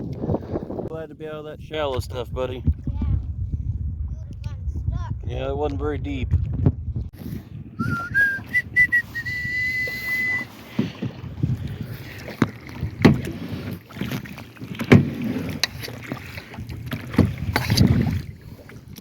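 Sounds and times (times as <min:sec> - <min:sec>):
paddle strokes splashing water: 0:07.2 - 0:19.0
whistled note: 0:07.8 - 0:10.5.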